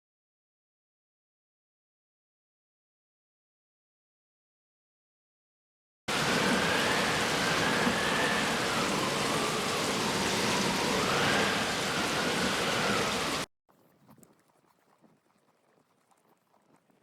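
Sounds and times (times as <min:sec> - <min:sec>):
storm wind howling: 0:06.1 - 0:13.5.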